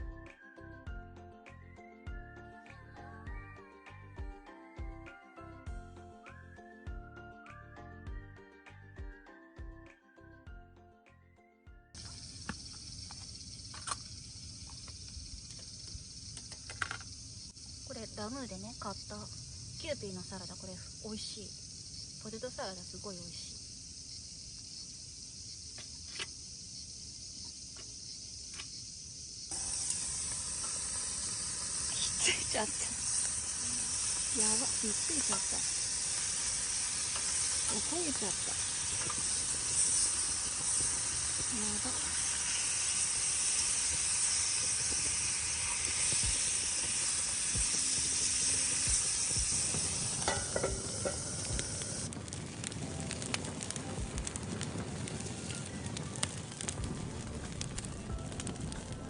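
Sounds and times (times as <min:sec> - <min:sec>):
chicken sizzling in a frying pan: 0:12.0 - 0:59.0
crackling ticks: 0:45.7 - 0:59.0.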